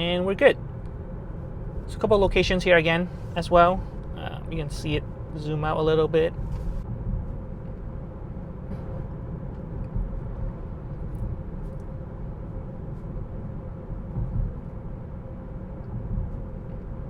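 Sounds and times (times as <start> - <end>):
faint steady hum: 0.0 - 17.0
road and tyre rumble: 0.0 - 17.0.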